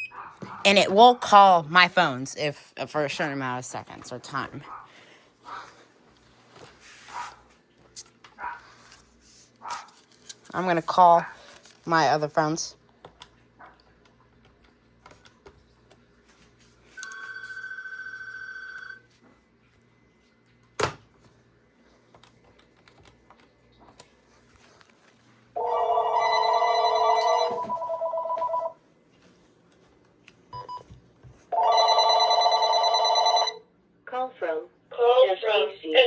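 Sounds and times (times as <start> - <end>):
telephone electronic ringing: 17.0 - 19.0, 25.6 - 28.8, 31.5 - 33.6.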